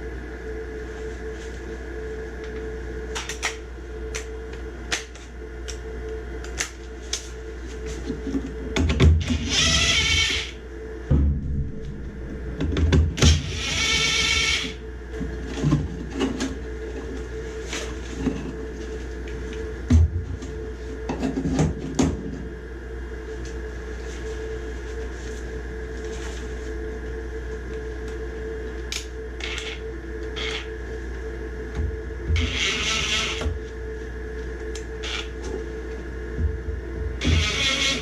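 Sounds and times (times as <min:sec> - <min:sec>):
steady hum: 0:00.0 - 0:38.0
short motor whir: 0:37.2 - 0:38.0.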